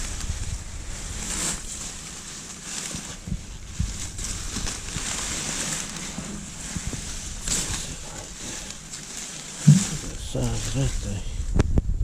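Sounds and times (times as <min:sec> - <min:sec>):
wind buffeting microphone: 0:00.0 - 0:01.7, 0:03.2 - 0:08.7, 0:09.6 - 0:12.0
rustling: 0:00.0 - 0:11.7
soft knocks: 0:09.6 - 0:10.1.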